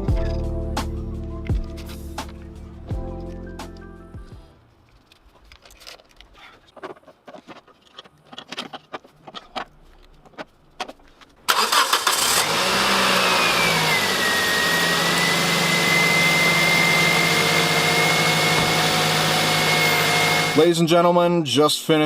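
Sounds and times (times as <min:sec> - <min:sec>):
car engine starting and idling: 0:11.5 - 0:20.6
engine whine: 0:11.5 - 0:20.6.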